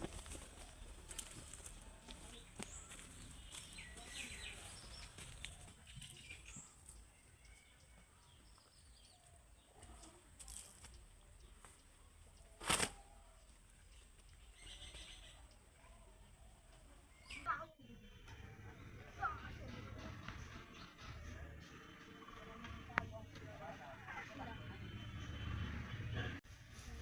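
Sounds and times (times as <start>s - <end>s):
faint bird chirps: 2.2s - 23.1s.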